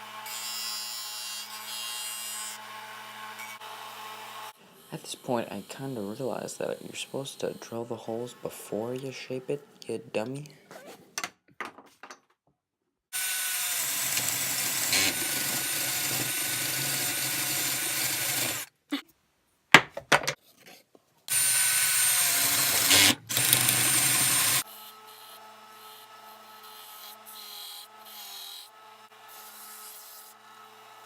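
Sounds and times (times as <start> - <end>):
electric drill boring wood: 0.0 - 7.2, 13.2 - 18.7, 21.3 - 31.0.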